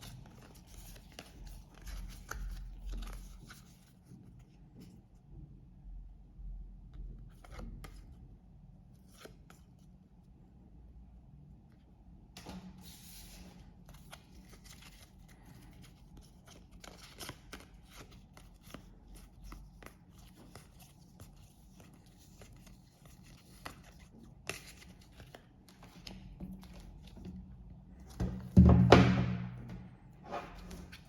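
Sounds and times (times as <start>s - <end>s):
cards rustling: 13.9s - 27.2s.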